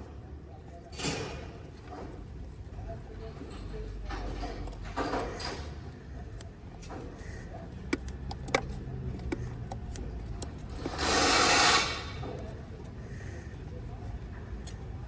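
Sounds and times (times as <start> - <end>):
plastic clicks and knocks: 7.8 - 11.0.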